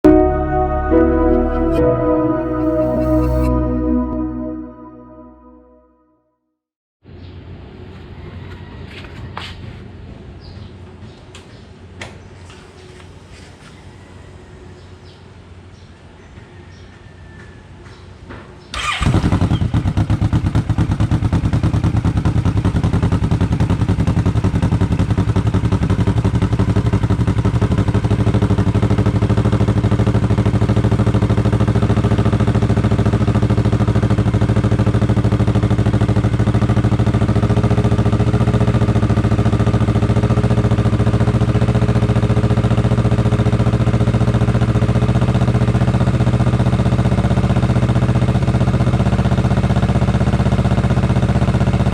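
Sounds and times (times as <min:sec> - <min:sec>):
motorcycle engine starting and idling: 0:18.7 - 0:51.9.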